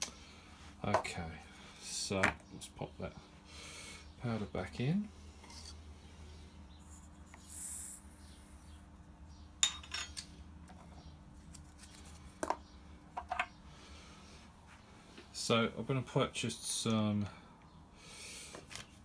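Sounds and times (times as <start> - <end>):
metal tools clinking: 9.6 - 10.3.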